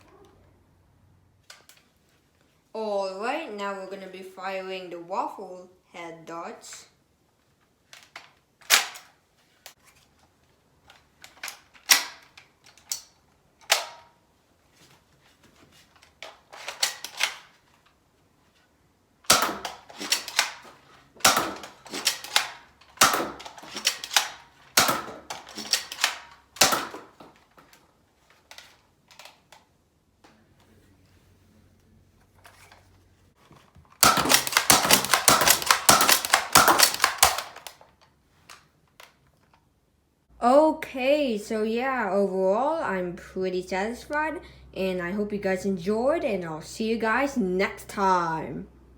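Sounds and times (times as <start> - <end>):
toy blaster shots snapping: 19.3 - 27.2, 34.0 - 37.8
blaster mechanism clicks: 34.0 - 37.8.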